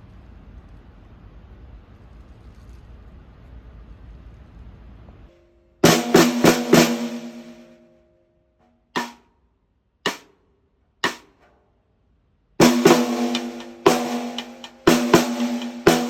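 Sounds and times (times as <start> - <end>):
snare drum strokes: 5.8 - 7.8, 9.0 - 9.2, 10.1 - 10.4, 11.0 - 11.6, 12.6 - 16.0.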